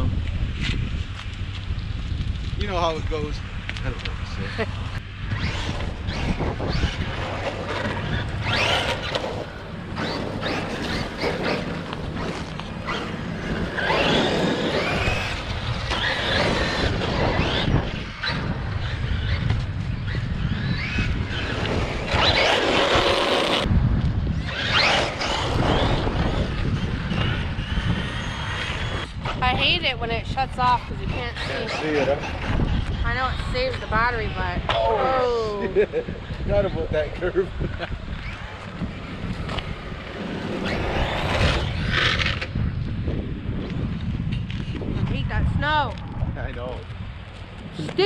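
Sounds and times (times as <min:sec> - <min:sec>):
wind rumbling on microphone: 0:00.0 - 0:48.0
electric toy truck motors whining: 0:05.3 - 0:23.7, 0:24.3 - 0:29.8, 0:37.7 - 0:42.7.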